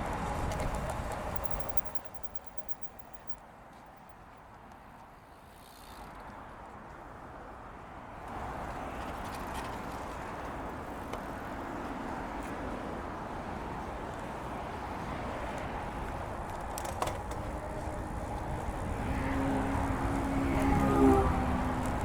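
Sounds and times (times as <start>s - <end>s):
wind and bicycle tyre noise: 0.0s - 22.0s
pitched mechanical hum: 0.3s - 3.4s
sharp tick: 1.4s - 3.4s.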